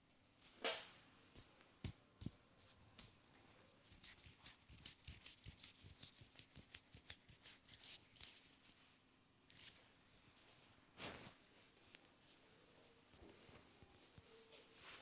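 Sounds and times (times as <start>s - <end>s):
rubbing strokes on hair: 3.8s - 8.8s.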